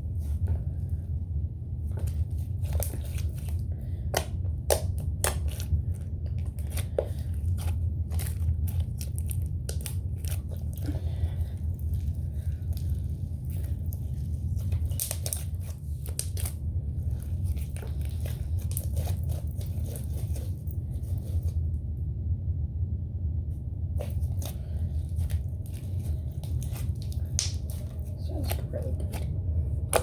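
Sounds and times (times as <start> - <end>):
low hum: 0.0 - 30.0
slime squished by hand: 2.0 - 21.6, 24.0 - 29.2.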